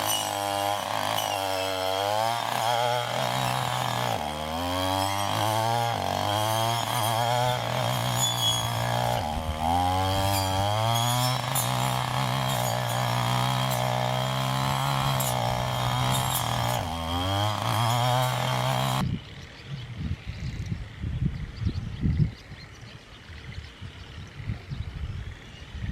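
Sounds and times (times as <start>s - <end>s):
small petrol engine revving: 0.0s - 19.0s.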